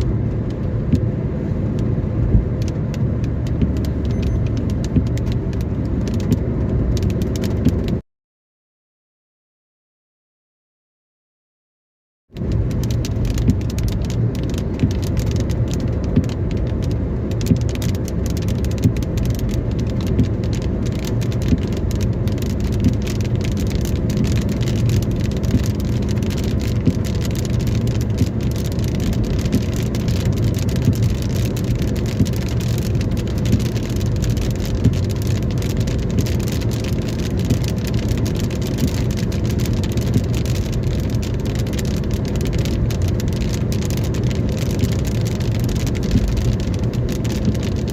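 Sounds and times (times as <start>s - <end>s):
car driving on road drone: 0.0s - 8.0s, 12.3s - 47.9s
raindrops ticking on car: 0.0s - 8.0s, 12.4s - 47.9s.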